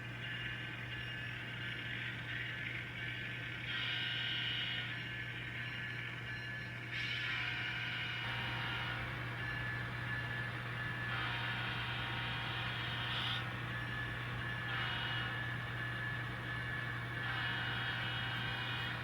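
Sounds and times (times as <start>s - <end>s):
model train motor humming: 0.2s - 5.0s, 7.2s - 19.0s.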